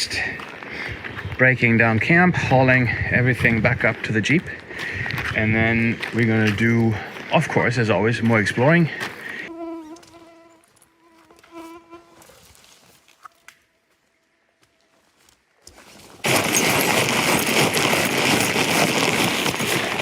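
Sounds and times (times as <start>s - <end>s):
flying insect buzzing: 9.5s - 12.4s.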